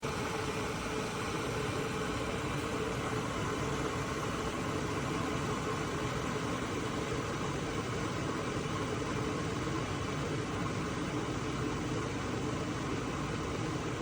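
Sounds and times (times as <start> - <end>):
electric kettle heating water: 0.0 - 13.8.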